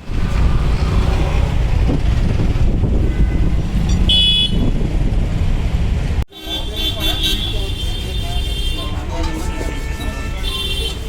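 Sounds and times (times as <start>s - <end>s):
street traffic rumbling: 0.0s - 11.0s
vehicle horn beep: 3.0s - 4.7s, 6.3s - 11.0s.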